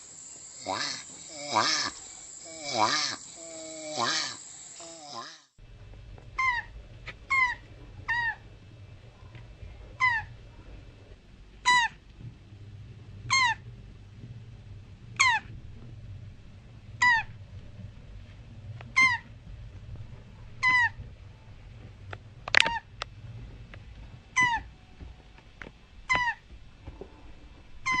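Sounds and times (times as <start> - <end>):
low hum: 5.6 - 28.0
turtle squeaky calls: 6.4 - 6.7, 7.3 - 8.4, 10.0 - 10.3, 13.3 - 13.6, 19.0 - 19.2, 20.6 - 21.0, 24.4 - 24.7, 26.1 - 26.4.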